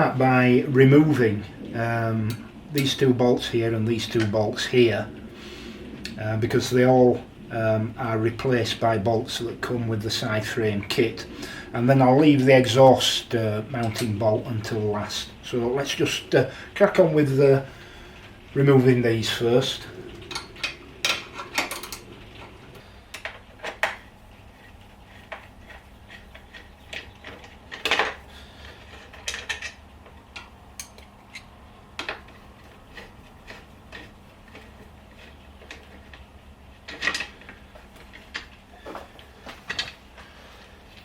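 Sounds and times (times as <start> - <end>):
hand tools clinking on metal: 25.7 - 34.7.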